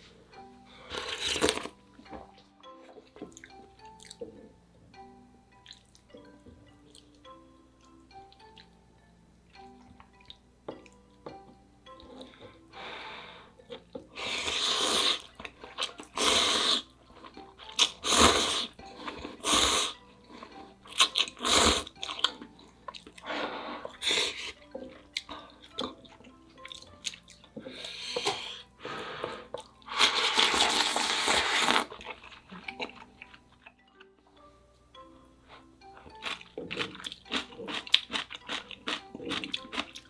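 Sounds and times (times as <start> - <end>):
noodles slurped: 0.9 - 1.8, 14.1 - 17.0, 17.6 - 20.0, 20.9 - 28.7, 29.3 - 33.4
wet chewing: 0.9 - 4.4, 13.7 - 28.7, 29.5 - 33.8, 35.5 - 40.0.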